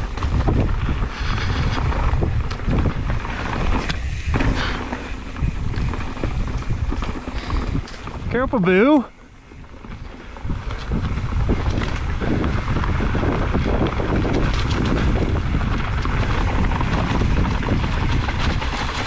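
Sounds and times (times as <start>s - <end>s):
bike rattling and clattering: 0.0s - 19.0s
tyres rumbling over rock: 0.0s - 19.0s
wind buffeting microphone: 0.0s - 19.0s.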